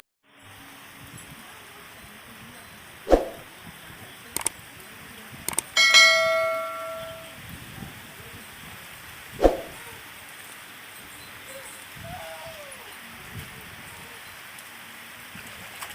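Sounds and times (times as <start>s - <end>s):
steady rain: 0.3s - 15.9s
sharp clicks: 4.4s - 4.6s, 5.5s - 5.8s
ringing metallic strike: 5.8s - 7.4s.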